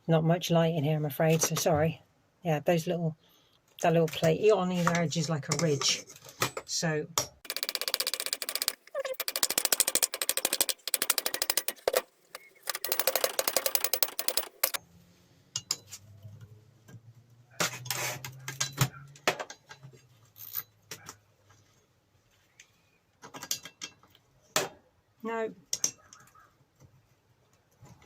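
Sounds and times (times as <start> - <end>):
ratchet clicks: 7.4 - 14.8.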